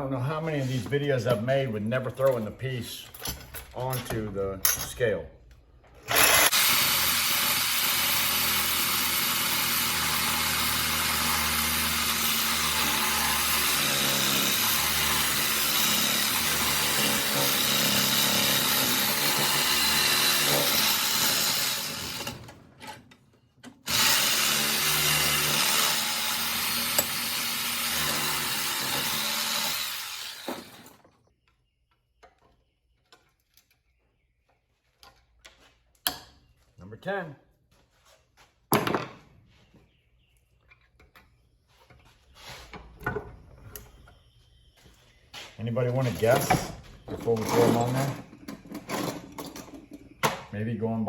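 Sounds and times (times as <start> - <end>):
power tool cutting metal: 6.1 - 22.5, 23.9 - 31.0.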